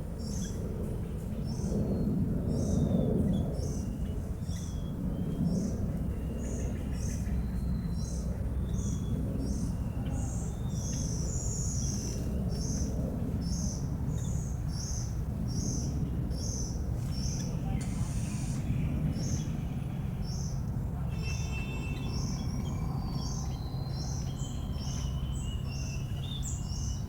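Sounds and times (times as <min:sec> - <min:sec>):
steady low rumble: 0:00.0 - 0:27.0
birds chirping: 0:06.4 - 0:27.0.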